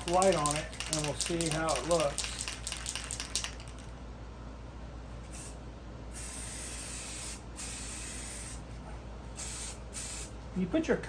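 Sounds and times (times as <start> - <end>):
spray paint can hissing: 0.0 - 3.8, 6.2 - 8.6, 9.4 - 10.3.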